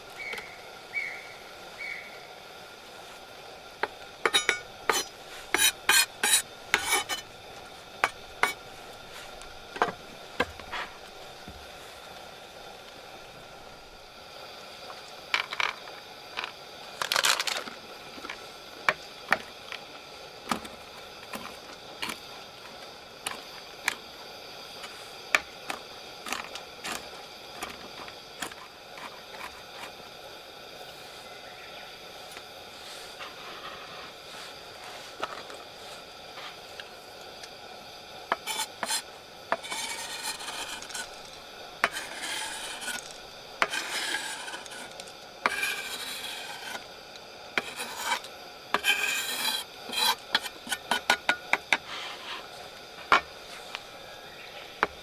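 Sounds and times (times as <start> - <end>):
steady low hiss: 0.0 - 55.0
metal utensils clinking: 4.2 - 7.3.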